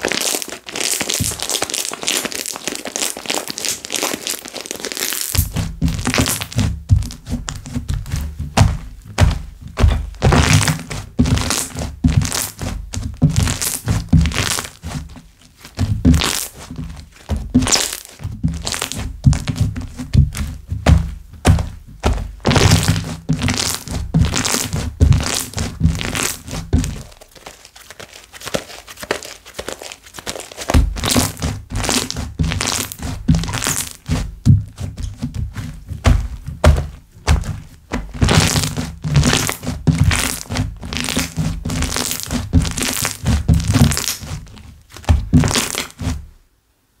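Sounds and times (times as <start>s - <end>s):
slime squeezed by hand: 0.0s - 8.8s, 9.9s - 46.2s.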